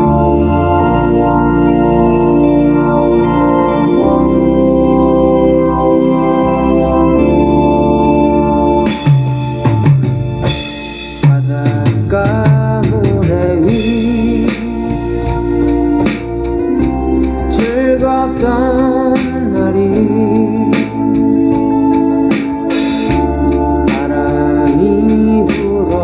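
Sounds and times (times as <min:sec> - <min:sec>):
bass: 0:00.0 - 0:26.0
organ chords: 0:00.0 - 0:26.0
drum kit with cymbal crashes: 0:08.9 - 0:18.6, 0:19.2 - 0:19.7, 0:20.7 - 0:26.0
person singing with vibrato: 0:10.8 - 0:15.6, 0:17.4 - 0:21.4, 0:23.8 - 0:26.0.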